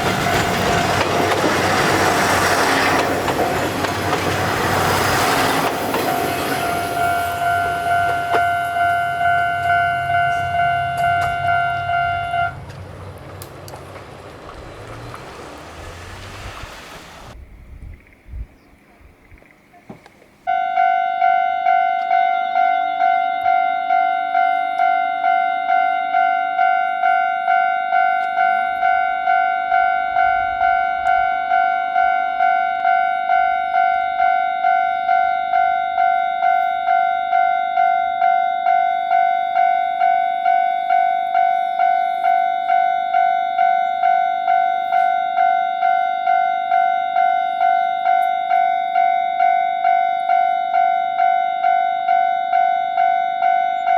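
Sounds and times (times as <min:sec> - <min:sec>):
railroad crossing bell ringing: 0:00.0 - 0:17.4, 0:20.5 - 0:53.9
low engine hum: 0:08.0 - 0:17.7.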